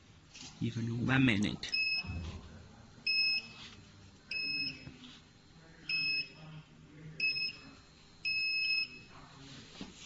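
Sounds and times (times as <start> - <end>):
short high control panel beeps: 1.7 - 2.2.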